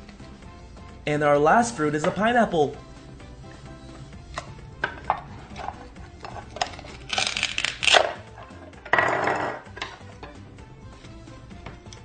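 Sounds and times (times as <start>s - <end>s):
faint background music: 0.0s - 12.0s
velcro ripping: 6.7s - 8.3s.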